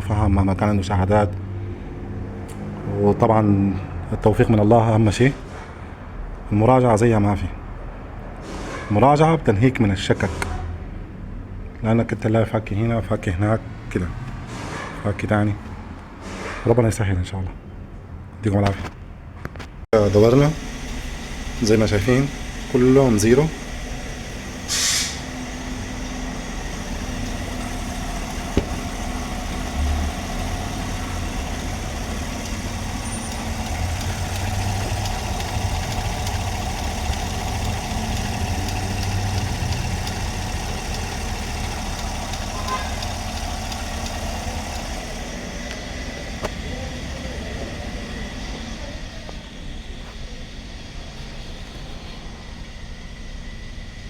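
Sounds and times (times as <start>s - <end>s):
engine idling: 20.0s - 52.0s
brief hiss: 24.7s - 25.2s.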